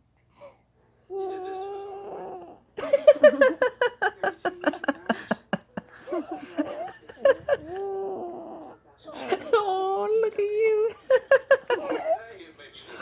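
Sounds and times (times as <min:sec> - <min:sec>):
baby cooing: 0:01.1 - 0:02.7, 0:06.7 - 0:08.9
breathy laughter: 0:02.8 - 0:08.1, 0:11.0 - 0:12.2.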